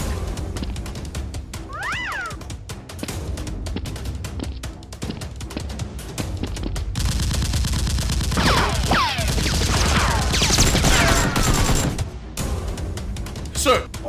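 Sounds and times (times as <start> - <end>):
rapid automatic gunfire: 7.0 - 12.0.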